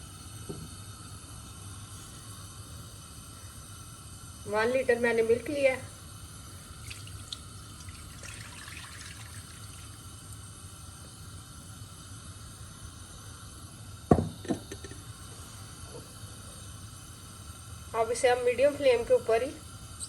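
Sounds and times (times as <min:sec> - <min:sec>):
milk pouring into a pan: 0:06.7 - 0:10.4.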